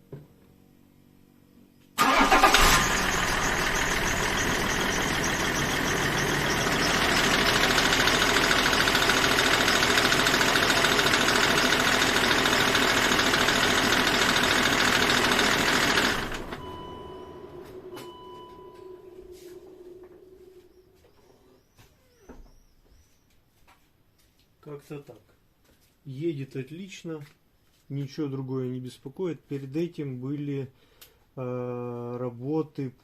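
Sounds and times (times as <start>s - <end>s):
diesel engine idling: 2.0s - 21.1s.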